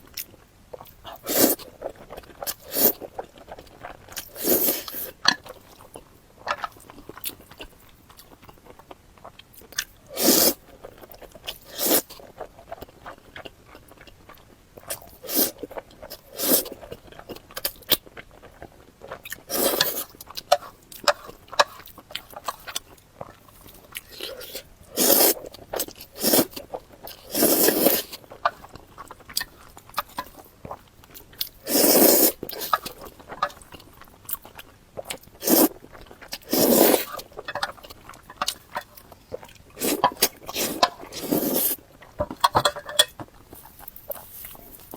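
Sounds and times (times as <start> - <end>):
person eating crunchy food: 0.0 - 44.9.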